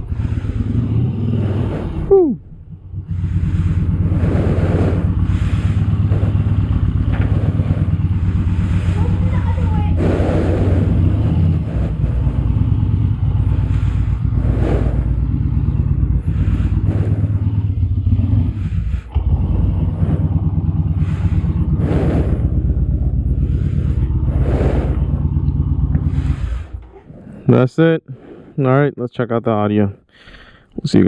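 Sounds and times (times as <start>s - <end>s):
motorcycle engine idling: 0.0s - 27.0s
rush of noise: 0.0s - 27.4s.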